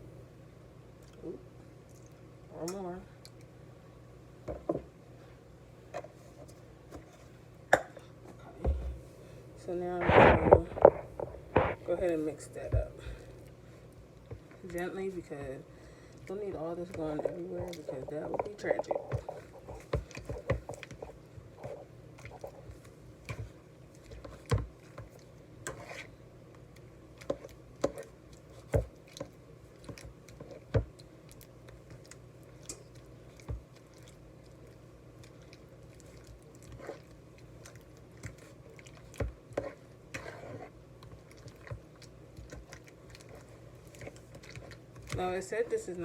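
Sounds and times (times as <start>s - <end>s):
low steady hum: 0.0s - 46.0s
utensil stirring thick mixture: 9.7s - 46.0s.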